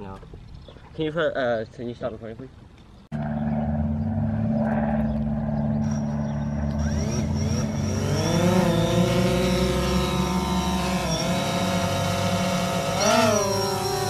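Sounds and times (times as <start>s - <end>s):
small electric motors humming: 5.1s - 14.0s.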